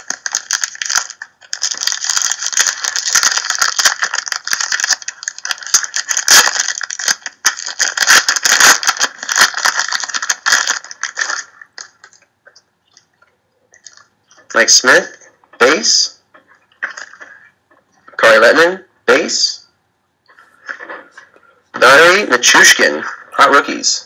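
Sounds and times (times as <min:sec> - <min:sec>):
card packs rustling and clicking: 0:00.0 - 0:12.3.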